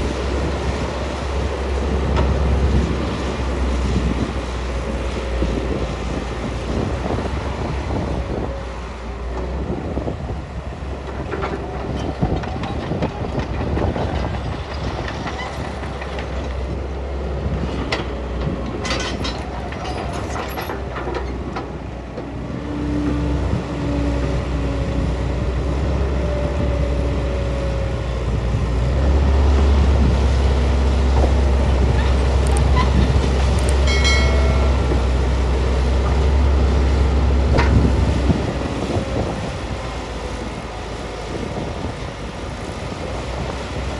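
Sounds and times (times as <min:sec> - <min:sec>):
diesel engine rumbling: 0:00.0 - 0:43.9
hydraulic whine: 0:30.0 - 0:38.6
metallic clanks: 0:32.0 - 0:35.4.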